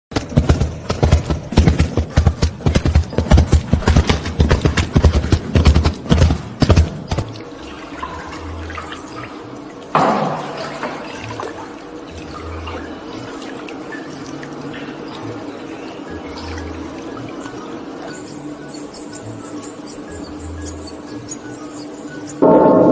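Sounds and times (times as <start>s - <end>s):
sharp knocks and clicks: 0.1s - 7.4s.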